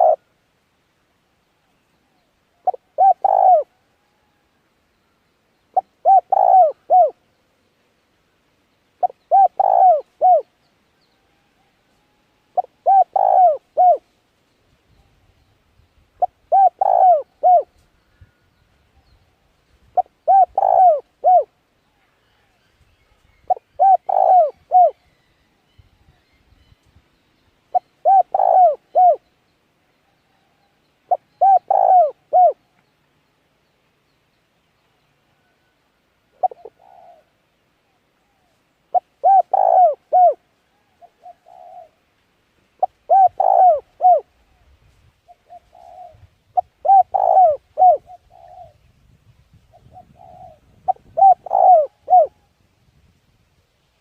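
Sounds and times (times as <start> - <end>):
bird hooting call: 0.0 - 0.3, 2.6 - 4.5, 5.7 - 7.2, 9.0 - 14.0, 16.2 - 18.4, 19.9 - 26.7, 27.7 - 29.3, 30.0 - 32.7, 35.3 - 42.0, 42.8 - 44.7, 45.3 - 48.8, 49.7 - 52.6.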